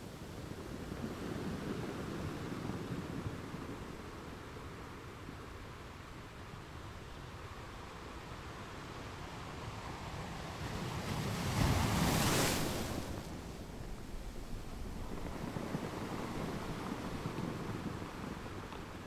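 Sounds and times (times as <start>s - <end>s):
wave breaking and washing in: 10.0s - 19.0s
wind buffeting microphone: 11.3s - 19.0s.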